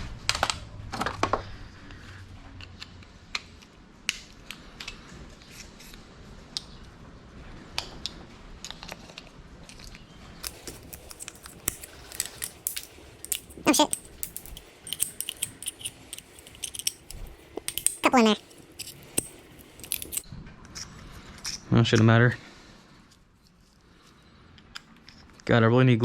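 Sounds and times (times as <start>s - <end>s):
hand tools clicking and tapping: 10.4s - 20.2s.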